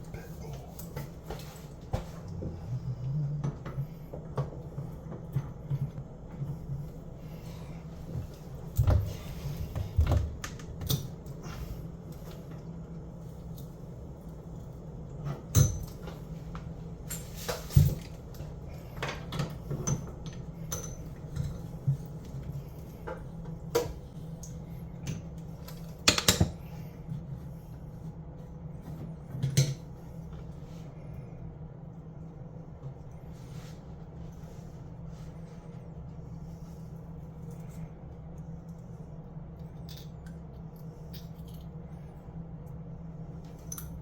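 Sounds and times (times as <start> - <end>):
steady low hum: 0.0 - 44.0
tools and metal fittings clinking: 19.8 - 21.7, 43.5 - 44.0.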